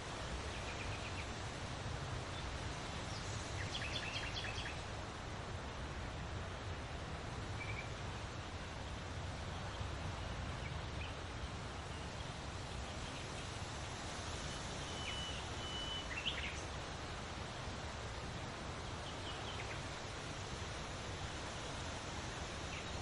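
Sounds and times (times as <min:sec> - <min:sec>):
steady breeze: 0:00.0 - 0:23.0
bird calls and chirps: 0:03.1 - 0:04.8, 0:07.6 - 0:07.9, 0:14.8 - 0:16.7.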